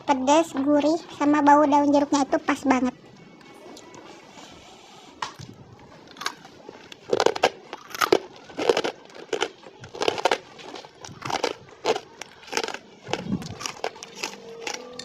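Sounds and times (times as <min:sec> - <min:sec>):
crunchy chewing: 0:05.4 - 0:15.0.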